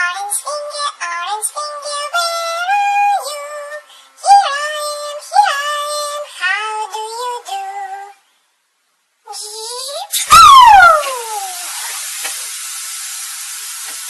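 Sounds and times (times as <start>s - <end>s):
synthetic children's song singing: 0.0s - 8.2s, 9.2s - 12.0s.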